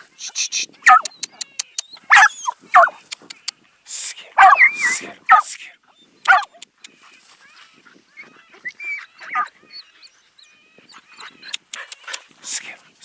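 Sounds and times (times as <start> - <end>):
dog yelping: 0.8 - 3.1, 4.4 - 5.5, 6.3 - 12.5
dog whining: 0.9 - 3.0, 4.4 - 5.4, 8.2 - 12.3.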